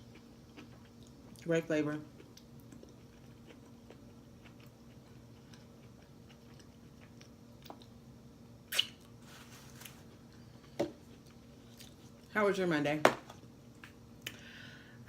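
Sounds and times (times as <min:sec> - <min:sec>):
faint steady hum: 0:00.0 - 0:15.0
chewing a burger: 0:02.1 - 0:08.0.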